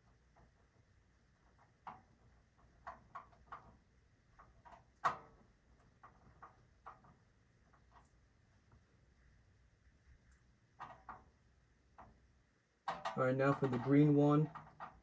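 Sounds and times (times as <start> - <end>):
small clicks and taps of wires: 1.4 - 8.9, 10.2 - 12.2, 12.8 - 15.0.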